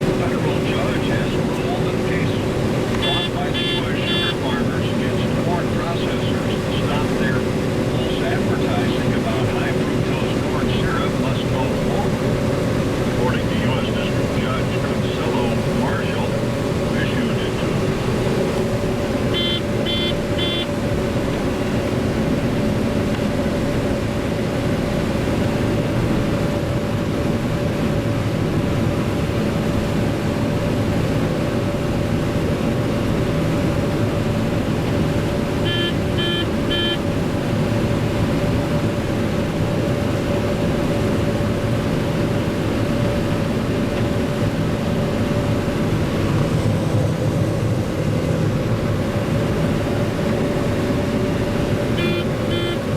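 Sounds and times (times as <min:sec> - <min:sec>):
combine harvester droning: 0:00.0 - 0:52.9
short high beeps: 0:03.0 - 0:04.4, 0:19.3 - 0:20.7, 0:35.7 - 0:37.0, 0:52.0 - 0:52.9.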